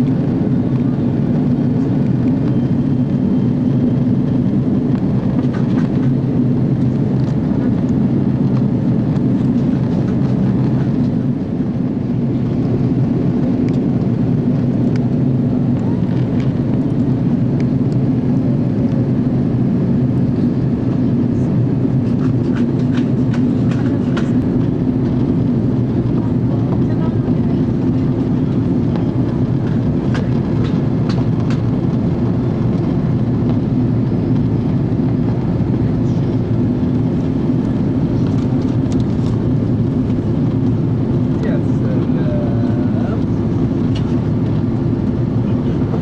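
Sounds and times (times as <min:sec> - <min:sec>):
jet cabin engine drone: 0:00.0 - 0:46.0.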